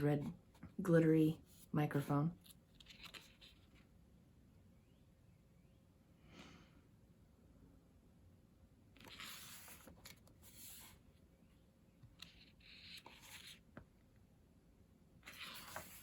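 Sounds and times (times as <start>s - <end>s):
pages rustling and turning: 2.4s - 3.9s, 9.0s - 11.0s, 12.0s - 13.9s, 15.2s - 16.0s.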